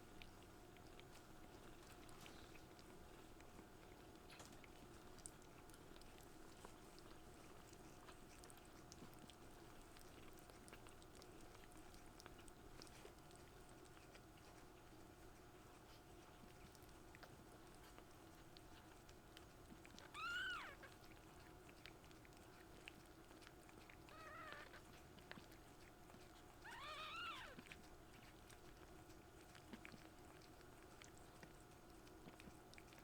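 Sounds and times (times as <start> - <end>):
kitten mewing: 20.0 - 21.0, 24.1 - 24.8, 26.6 - 27.6.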